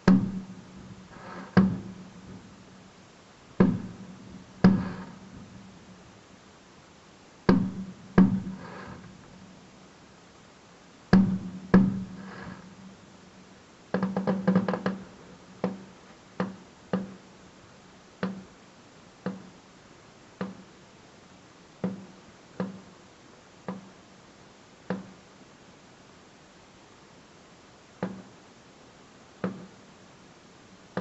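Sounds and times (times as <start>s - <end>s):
firework crackling: 0.6s - 2.8s, 3.8s - 5.8s, 8.0s - 9.4s, 12.0s - 12.9s
firework bangs: 3.6s - 5.6s.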